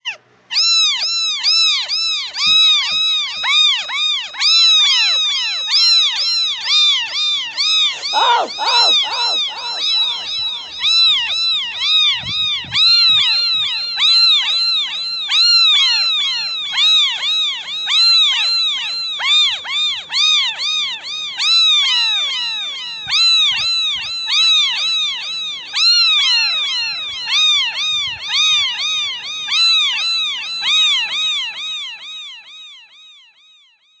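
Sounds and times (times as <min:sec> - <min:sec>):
kittens mewing: 0:08.0 - 0:10.9.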